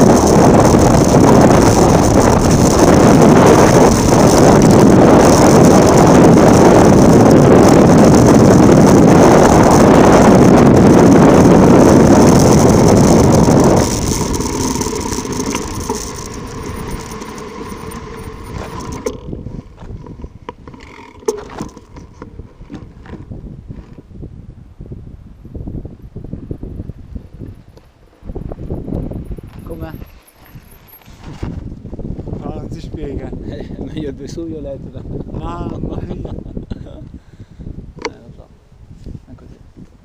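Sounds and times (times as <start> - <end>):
bike tyre noise: 0.0 - 24.1, 26.2 - 32.4
wind rushing over microphone: 0.0 - 40.0.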